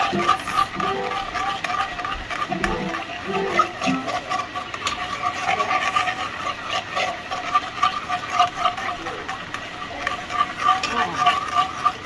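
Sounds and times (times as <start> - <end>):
pulsing two-tone mechanical whine: 0.0 - 1.5.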